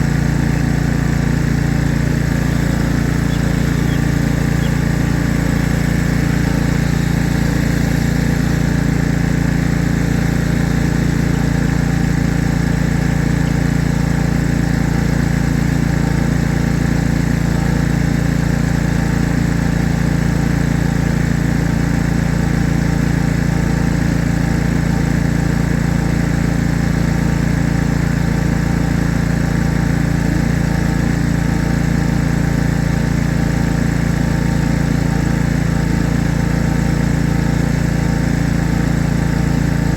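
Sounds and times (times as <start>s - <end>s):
engine running with fast pulsing: 0.0s - 39.9s.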